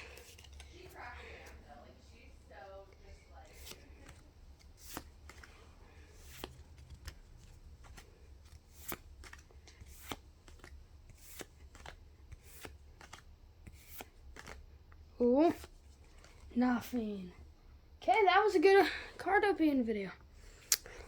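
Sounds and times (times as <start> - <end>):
trading cards flicked by hand: 6.2 - 14.6.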